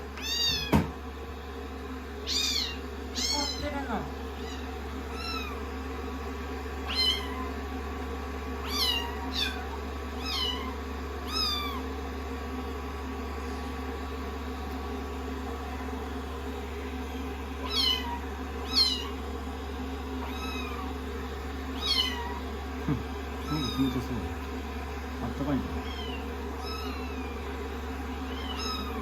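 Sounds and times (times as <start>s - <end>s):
hair dryer humming: 0.0s - 29.0s
kittens mewing: 2.2s - 5.8s, 6.8s - 7.7s, 8.6s - 12.0s, 17.1s - 19.3s, 20.0s - 29.0s.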